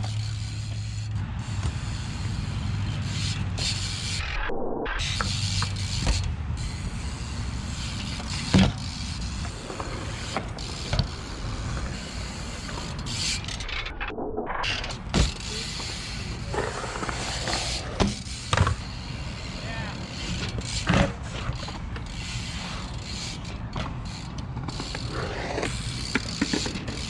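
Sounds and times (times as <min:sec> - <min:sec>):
bike rattling and creaking: 0:00.0 - 0:04.4, 0:05.0 - 0:27.0.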